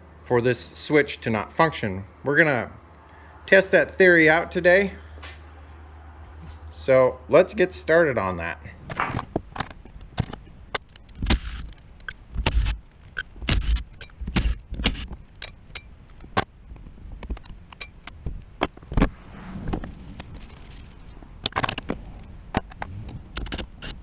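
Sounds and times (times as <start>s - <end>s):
dull thumps: 8.7s - 9.5s.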